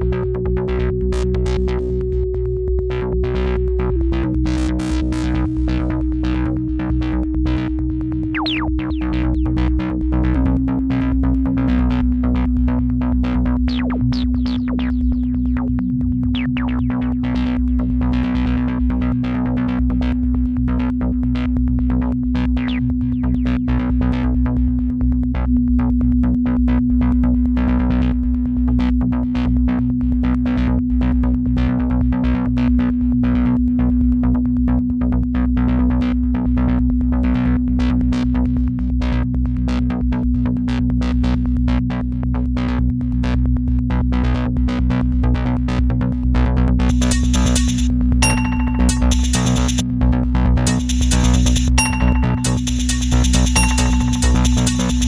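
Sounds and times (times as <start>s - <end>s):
deep bass: 0.0s - 55.0s
held synth note: 46.9s - 49.8s, 50.7s - 55.0s
clicking percussion: 46.9s - 49.9s, 50.6s - 55.0s.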